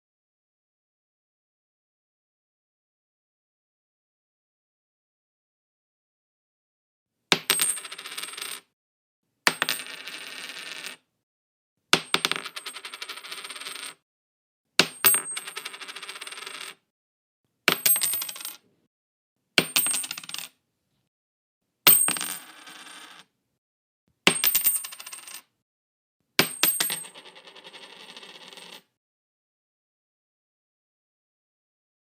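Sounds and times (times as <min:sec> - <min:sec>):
coins dropping on wood floor: 0:07.3 - 0:08.7, 0:09.5 - 0:11.0, 0:12.0 - 0:14.0, 0:14.8 - 0:16.8, 0:17.7 - 0:18.7, 0:19.6 - 0:20.6, 0:21.9 - 0:23.3, 0:24.3 - 0:25.5, 0:26.4 - 0:28.9.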